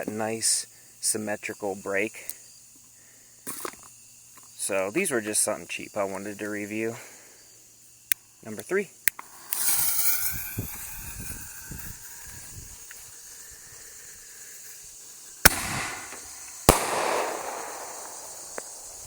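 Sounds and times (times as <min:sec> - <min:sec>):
crackling hiss: 0:00.0 - 0:19.0
firework launch hissing rush: 0:09.2 - 0:19.0
firework shell bang: 0:15.4 - 0:19.0.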